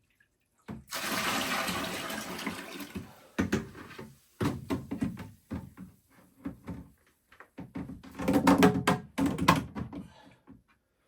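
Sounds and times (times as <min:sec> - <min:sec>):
hard objects knocking and clunking: 0:03.0 - 0:06.9, 0:07.6 - 0:10.2.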